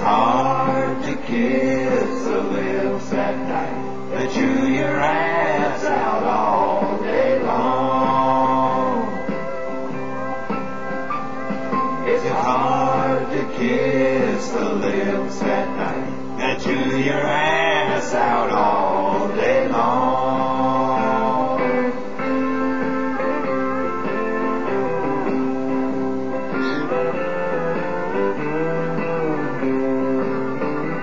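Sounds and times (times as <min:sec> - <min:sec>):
country song with guitar: 0:00.0 - 0:31.0.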